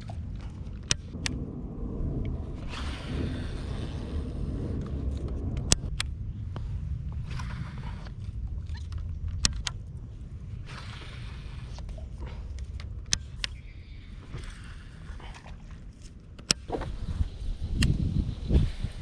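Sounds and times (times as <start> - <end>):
low rumble: 0.0 - 19.0
sharp clicks: 7.3 - 9.8.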